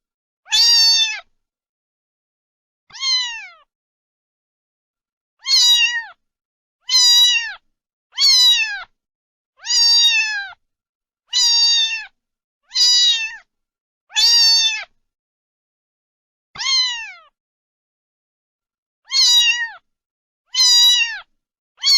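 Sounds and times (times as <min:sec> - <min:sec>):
cat meowing: 0:00.5 - 0:01.3, 0:02.9 - 0:03.7, 0:05.4 - 0:06.2, 0:06.9 - 0:07.6, 0:08.2 - 0:08.9, 0:09.6 - 0:10.6, 0:11.3 - 0:13.5, 0:14.1 - 0:14.9, 0:16.6 - 0:17.4, 0:19.1 - 0:19.8, 0:20.5 - 0:21.9.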